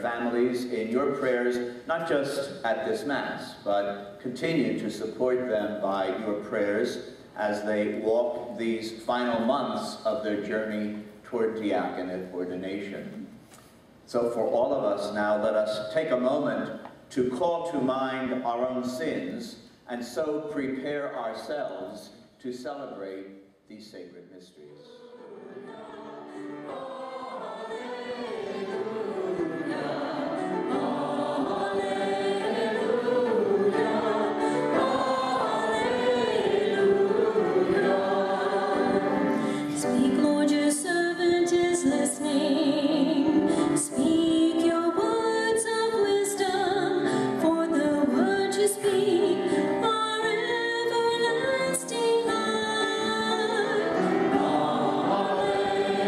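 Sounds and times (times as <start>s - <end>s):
choir singing: 24.7s - 40.2s, 52.2s - 56.0s.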